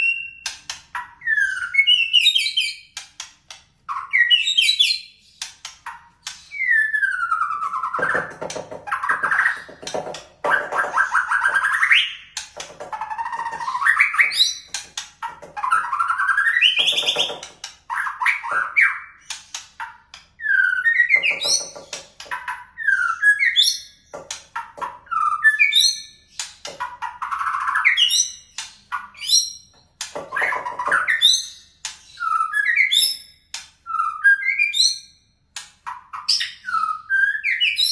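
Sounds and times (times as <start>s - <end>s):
songbird singing whistles and trills: 1.2s - 2.9s, 3.9s - 5.5s, 6.3s - 8.3s, 13.0s - 14.8s, 20.4s - 24.0s, 30.3s - 35.2s, 35.9s - 37.9s.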